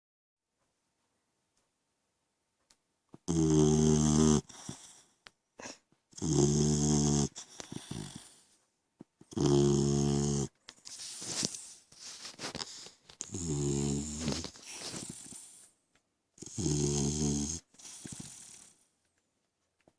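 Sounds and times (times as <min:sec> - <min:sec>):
puppy snoring: 0:03.2 - 0:08.6, 0:09.2 - 0:15.7, 0:16.4 - 0:18.9
snuffling breaths: 0:04.2 - 0:08.6, 0:09.3 - 0:15.8, 0:16.4 - 0:18.9.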